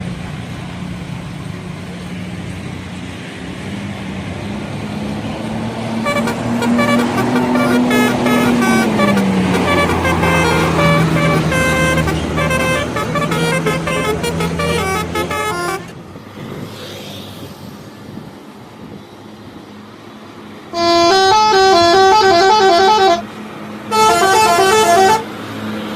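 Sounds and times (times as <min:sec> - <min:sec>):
bus engine running: 0:00.0 - 0:25.9
multi-tone air horn melody: 0:06.0 - 0:16.0, 0:20.7 - 0:23.3, 0:23.9 - 0:25.3.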